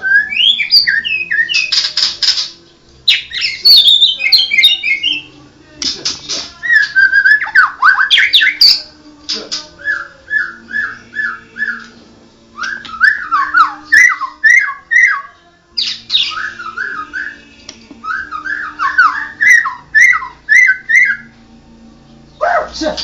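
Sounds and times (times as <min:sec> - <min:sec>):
bird singing whistled phrases: 0:00.0 - 0:01.8, 0:03.1 - 0:05.3, 0:06.6 - 0:08.8, 0:09.8 - 0:11.9, 0:12.6 - 0:21.3.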